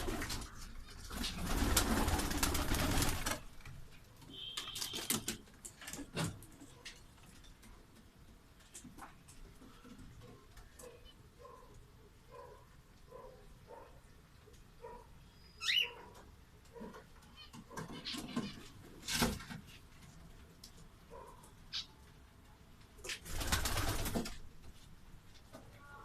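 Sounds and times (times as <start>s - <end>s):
rustling and wing flapping: 0.0s - 10.9s, 23.0s - 25.6s
pigeons cooing softly: 9.5s - 18.7s.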